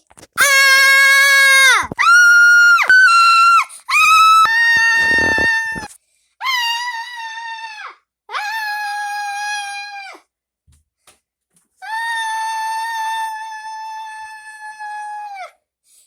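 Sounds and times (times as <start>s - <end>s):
high-pitched voices screaming: 0.4s - 5.9s.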